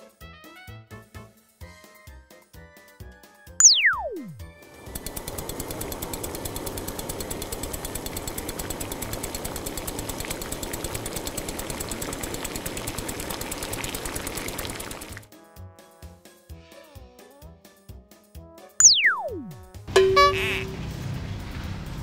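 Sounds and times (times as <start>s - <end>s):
rapid mechanical rattling: 4.6s - 15.3s.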